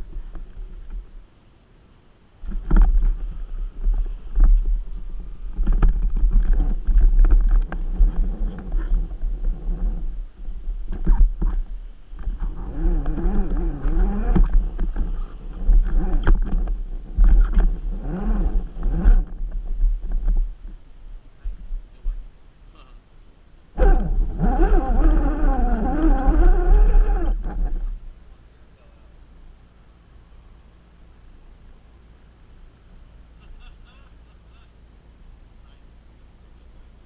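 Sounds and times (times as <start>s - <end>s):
rc car rumbling over rocks: 2.4s - 20.8s, 23.7s - 28.1s
electric motor whine: 5.3s - 19.6s, 23.8s - 28.0s.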